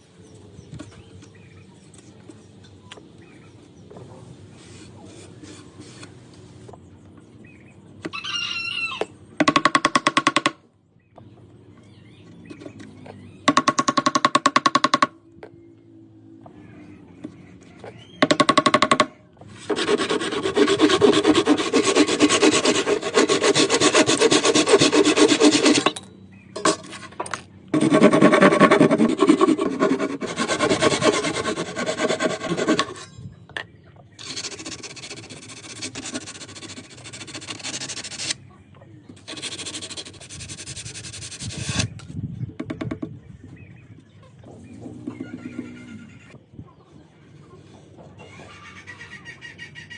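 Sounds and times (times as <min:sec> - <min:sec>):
tool scraping wood: 0:18.2 - 0:26.0, 0:26.6 - 0:33.2, 0:34.2 - 0:38.4, 0:39.2 - 0:42.1.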